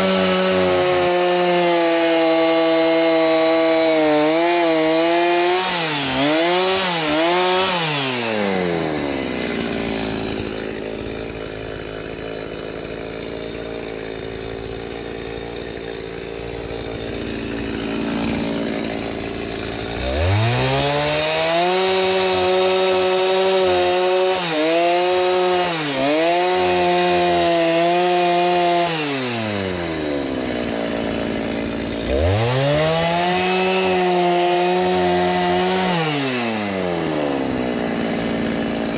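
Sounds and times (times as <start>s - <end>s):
chainsaw cutting logs: 0.0s - 38.9s.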